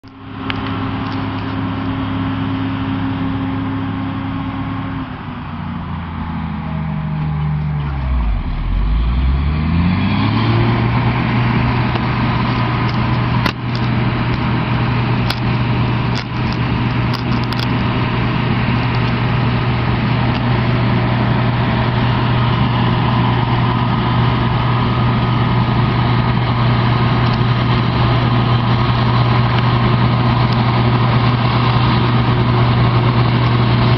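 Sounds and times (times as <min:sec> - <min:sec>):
diesel engine running: 0:00.0 - 0:33.9.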